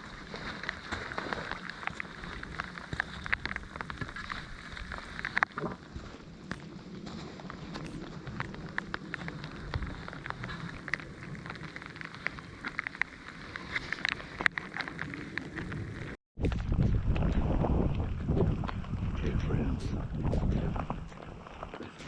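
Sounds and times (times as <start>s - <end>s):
rain falling: 0.0s - 16.2s.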